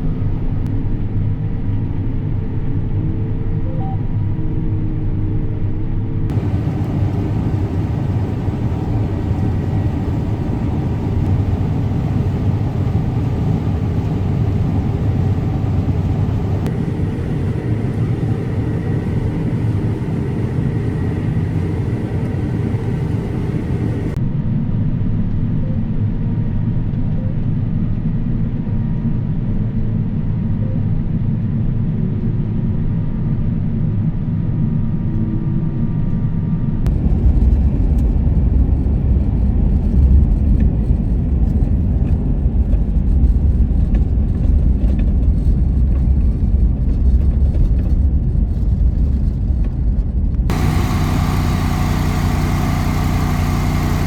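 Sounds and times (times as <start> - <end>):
harvest machinery engine rumble: 6.3 - 24.2, 36.9 - 54.0.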